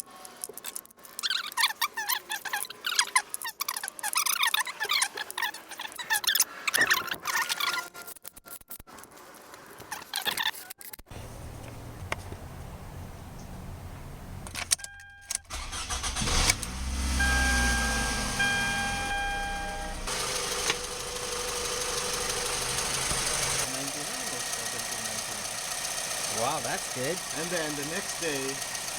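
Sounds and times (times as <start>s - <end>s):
car engine starting and idling: 11.1s - 28.9s
steady electronic tone: 17.1s - 20.1s.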